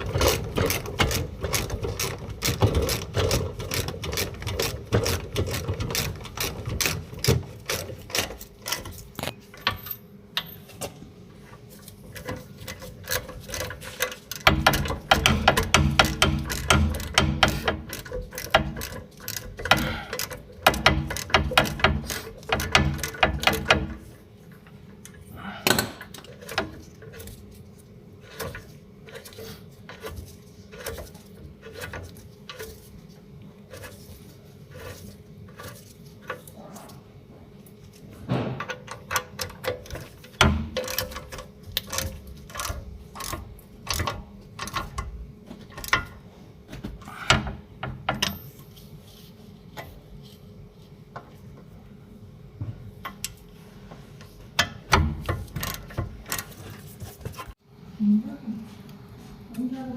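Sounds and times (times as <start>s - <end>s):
ratchet wrench clicking: 12.8s - 24.0s, 55.3s - 56.6s.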